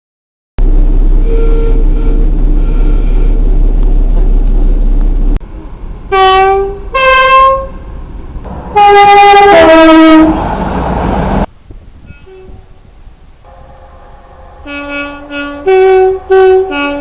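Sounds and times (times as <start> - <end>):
train two-tone horn: 1.2 - 3.6, 6.1 - 7.9, 8.7 - 10.6, 12.0 - 17.0.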